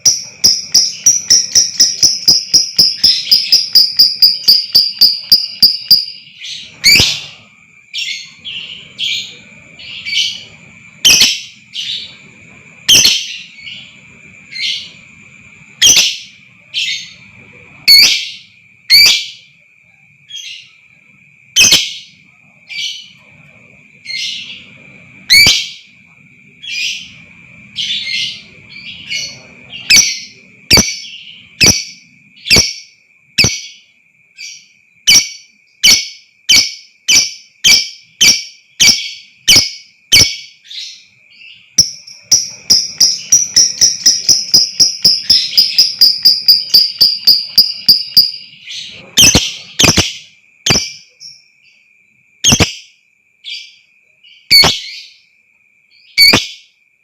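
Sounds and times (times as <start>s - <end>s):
steady high tone: 0.0s - 6.8s, 41.8s - 48.6s
lovebird shrill calls: 0.0s - 7.3s, 11.0s - 11.5s, 12.9s - 13.4s, 41.7s - 48.5s, 49.2s - 51.0s, 52.4s - 52.7s, 56.2s - 56.5s.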